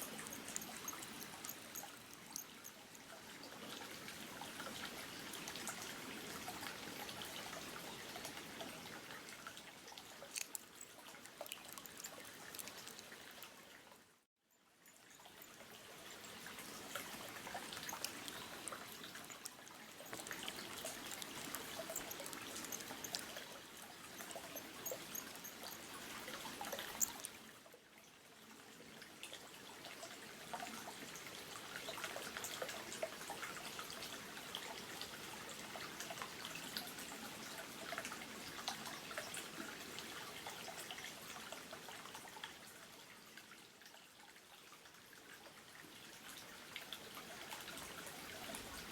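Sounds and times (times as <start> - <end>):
lure splashing and gurgling: 0.0 - 2.8, 10.1 - 13.4, 16.7 - 27.4.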